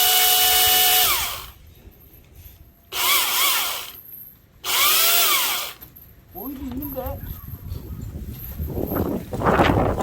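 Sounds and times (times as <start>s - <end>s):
electric chainsaw motor revving: 0.0s - 1.6s, 2.9s - 4.0s, 4.6s - 5.8s.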